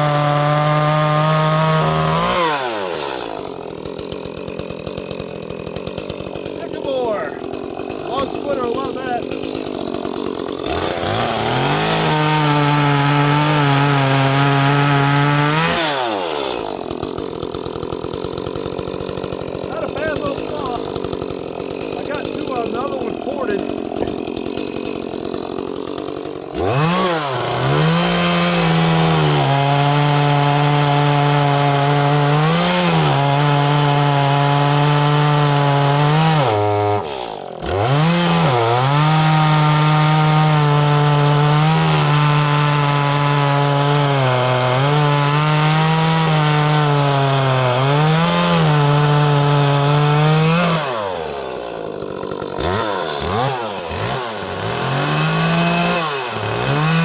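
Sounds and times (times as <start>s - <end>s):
chainsaw cutting log: 0.0s - 57.0s.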